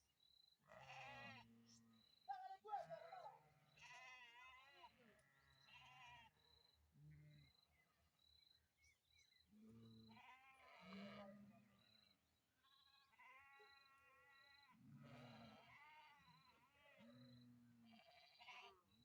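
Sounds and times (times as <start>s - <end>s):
sheep bleating: 0.7s - 1.8s, 2.7s - 6.4s, 10.1s - 11.8s, 12.6s - 17.2s, 17.8s - 18.9s.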